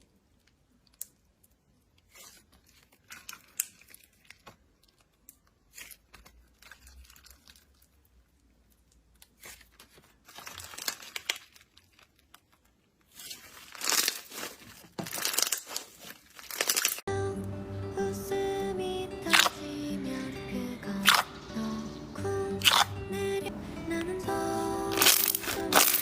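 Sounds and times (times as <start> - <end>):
slime crackling and popping: 0.0 - 17.1, 21.0 - 21.3, 22.6 - 22.9, 24.9 - 26.0
music: 17.1 - 26.0.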